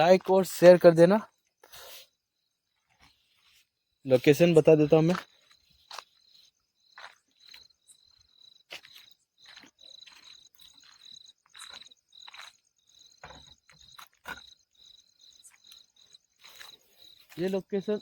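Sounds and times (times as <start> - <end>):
crickets chirping: 0.0 - 18.0
footsteps: 2.9 - 14.5, 15.5 - 18.0.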